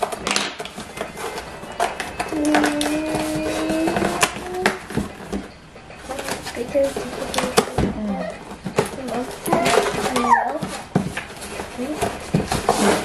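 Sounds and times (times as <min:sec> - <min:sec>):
cardboard and plastic packaging handled: 0:00.0 - 0:13.0
person humming: 0:02.3 - 0:04.8.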